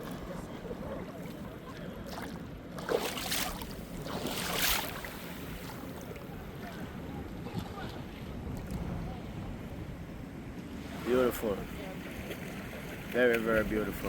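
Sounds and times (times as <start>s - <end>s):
sea water washing at shore: 0.0s - 14.0s
wind buffeting microphone: 3.2s - 14.0s.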